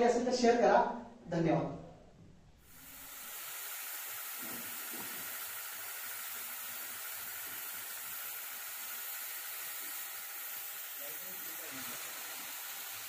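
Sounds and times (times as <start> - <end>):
water spray hissing: 2.7 - 13.0.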